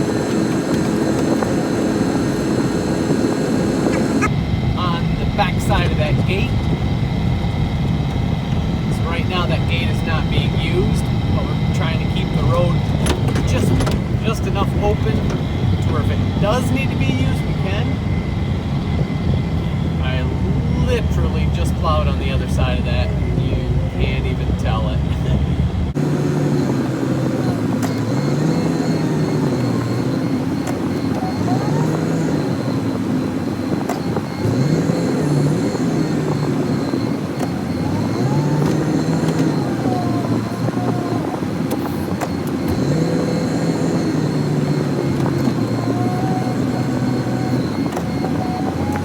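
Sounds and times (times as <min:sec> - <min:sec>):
snowplow engine revving: 0:00.0 - 0:49.0
faint steady high tone: 0:26.4 - 0:49.0.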